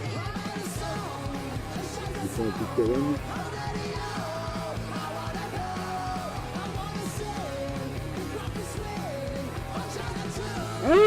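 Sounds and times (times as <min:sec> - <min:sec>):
rock song with guitar: 0:00.0 - 0:11.0
person singing or shouting: 0:02.2 - 0:03.2, 0:10.5 - 0:11.0.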